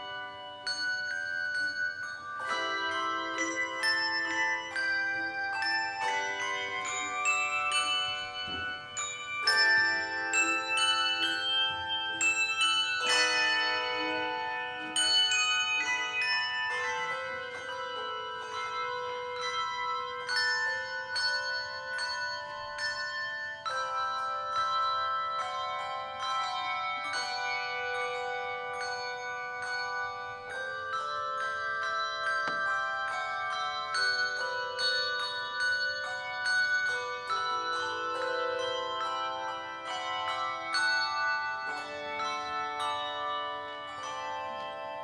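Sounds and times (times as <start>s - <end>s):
handbell choir playing: 0.0s - 45.0s.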